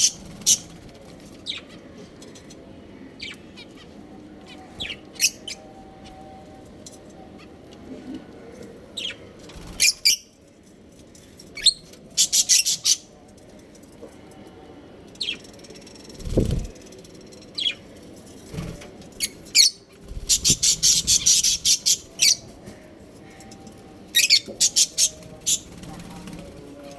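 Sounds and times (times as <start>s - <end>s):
budgerigars chirping: 20.2s - 22.4s, 24.3s - 25.7s.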